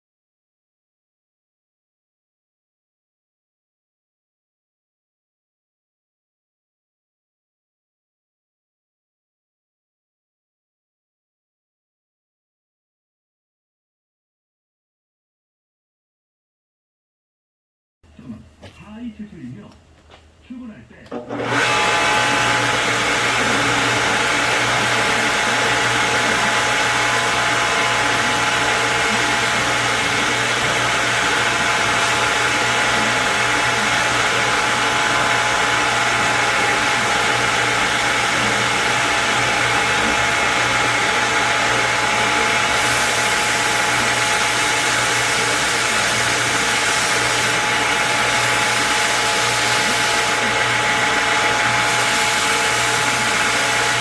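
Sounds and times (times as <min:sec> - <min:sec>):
workshop machine motor whirring: 0:21.0 - 0:54.0.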